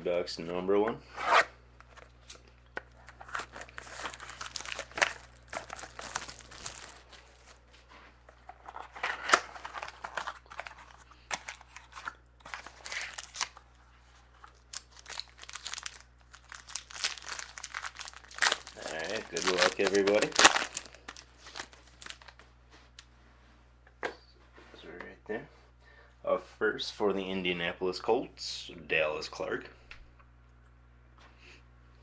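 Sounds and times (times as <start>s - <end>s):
packaging crinkling and tearing: 1.9s - 7.6s, 8.4s - 13.7s, 14.3s - 22.4s.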